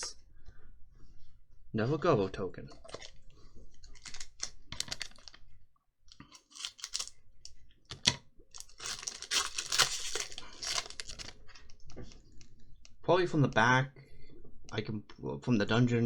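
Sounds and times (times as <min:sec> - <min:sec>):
cards clicking and rustling: 0:03.9 - 0:05.4, 0:06.2 - 0:07.1, 0:07.9 - 0:11.4
foil wrapper crinkling and tearing: 0:03.9 - 0:05.4, 0:06.1 - 0:07.2, 0:07.9 - 0:11.5.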